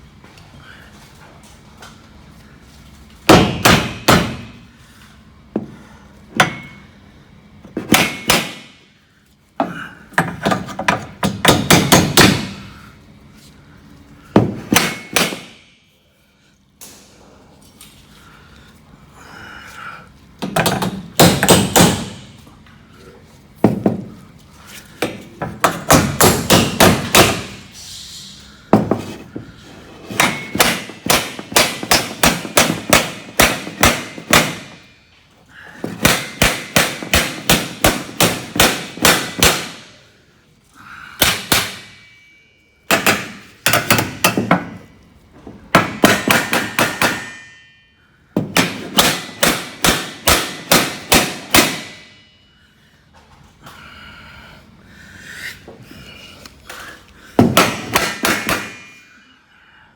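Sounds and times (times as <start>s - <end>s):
hammer striking metal door frame: 3.3s - 4.6s, 7.9s - 8.7s, 10.2s - 12.6s, 14.4s - 15.6s, 20.5s - 22.3s, 25.6s - 27.6s, 30.2s - 34.8s, 42.9s - 44.8s, 45.7s - 47.6s, 48.4s - 52.1s, 57.4s - 58.9s.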